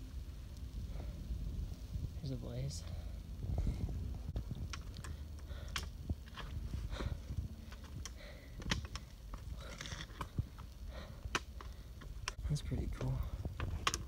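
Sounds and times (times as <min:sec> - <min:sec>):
low microphone rumble: 0:00.0 - 0:14.0
footsteps on rocky trail: 0:03.4 - 0:14.0.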